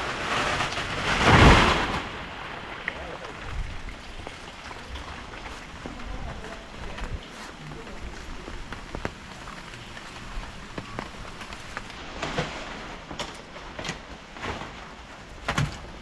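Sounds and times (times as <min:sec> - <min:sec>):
rain pattering: 0:00.0 - 0:16.0
sharp drips and taps: 0:02.8 - 0:07.3.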